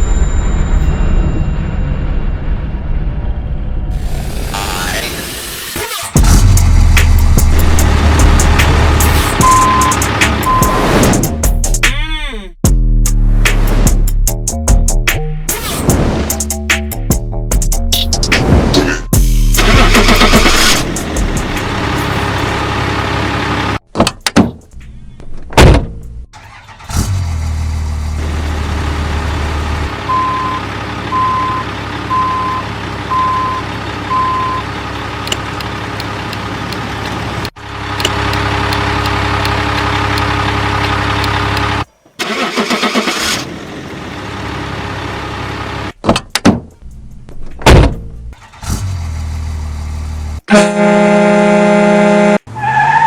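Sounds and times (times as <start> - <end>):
steady beeps: 9.4 - 10.9, 30.1 - 34.7
toy truck engine sound effects: 18.8 - 23.8, 28.2 - 45.9.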